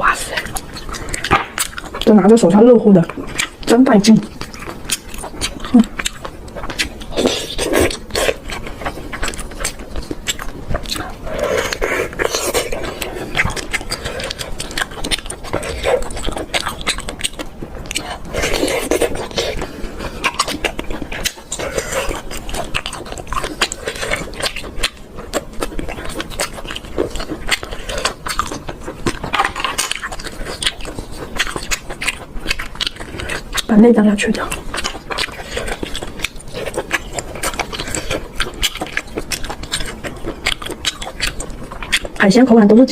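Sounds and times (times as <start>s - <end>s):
chewing and slurping: 0.0s - 42.9s.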